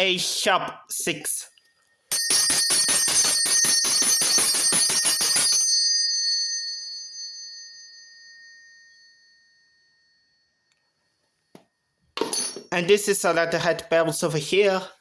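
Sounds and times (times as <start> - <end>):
handbell ringing: 2.1 - 10.5, 12.2 - 12.8.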